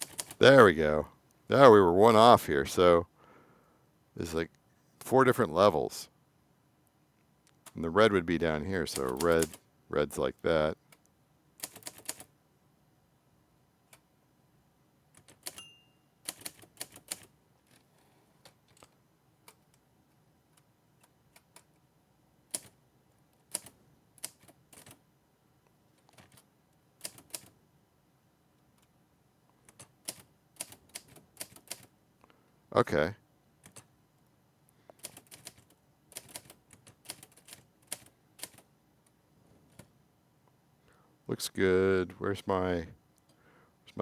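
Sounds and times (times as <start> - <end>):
typewriter key clacks: 0.0 - 0.4, 8.9 - 9.6, 16.3 - 17.8, 27.0 - 27.5
high bell ring: 15.6 - 16.1.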